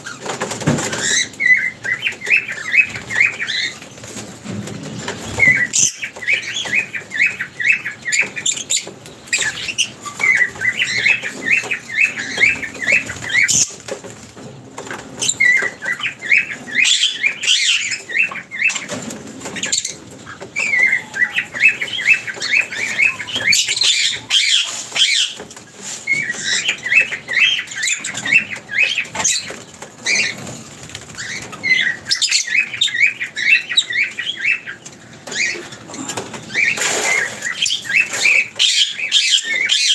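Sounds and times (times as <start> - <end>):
small birds chirping: 0.0 - 39.9
wings fluttering: 0.0 - 39.9.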